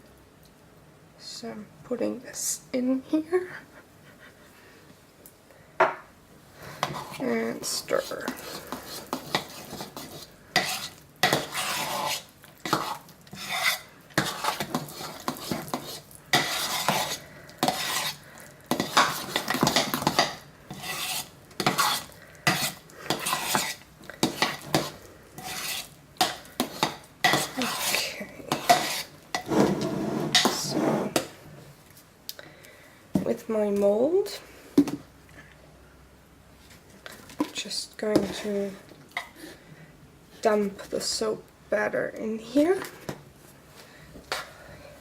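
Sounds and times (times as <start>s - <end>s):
utensil scraping round a pot: 6.6s - 31.3s.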